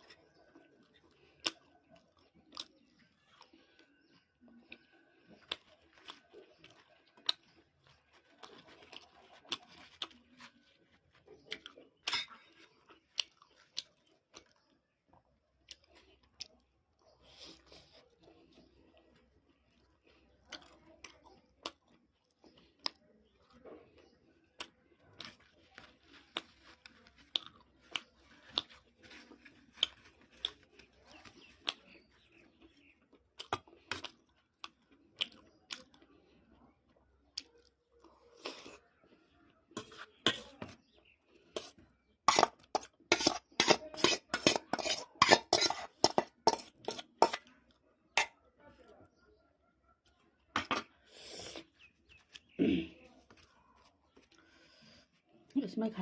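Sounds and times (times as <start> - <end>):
eating sounds: 0.0 - 55.6
spoon clinking and scraping metal bowl: 12.0 - 12.5, 42.3 - 47.5.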